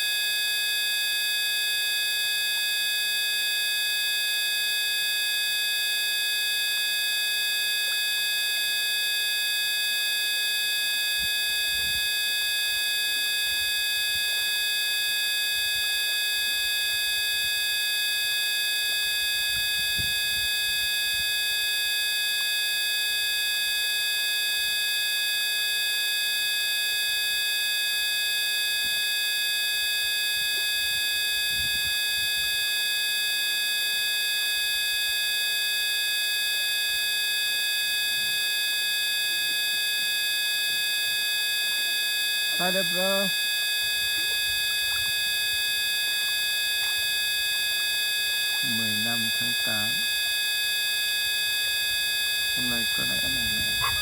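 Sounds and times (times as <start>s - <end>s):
steady buzzing drone: 41.4s - 54.0s.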